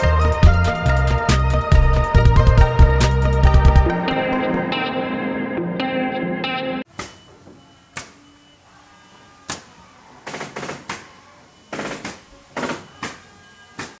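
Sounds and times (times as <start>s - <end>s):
background music: 0.0s - 6.9s.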